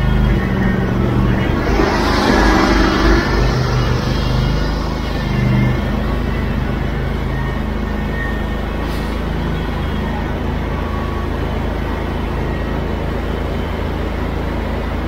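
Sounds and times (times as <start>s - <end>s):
engines running: 0.8s - 6.4s
rushing noise: 0.8s - 6.8s.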